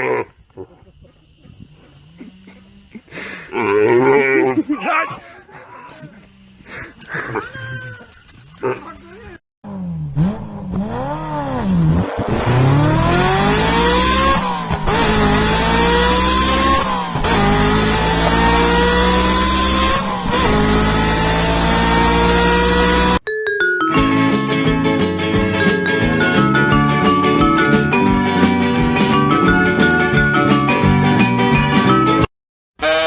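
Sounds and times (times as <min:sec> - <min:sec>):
car engine accelerating: 0:09.7 - 0:23.2
road and wind noise: 0:10.0 - 0:23.2.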